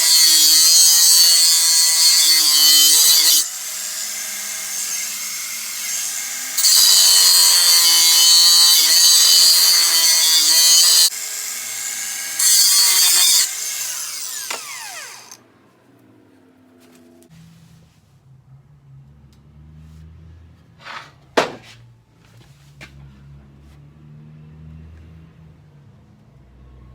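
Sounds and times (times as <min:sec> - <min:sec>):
angle grinder cutting steel: 0:00.0 - 0:15.4.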